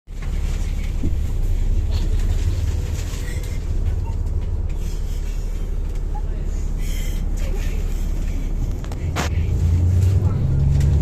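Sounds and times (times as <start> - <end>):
light rattles and clicks: 0.1 - 6.2
bus engine rumbling: 0.1 - 11.0.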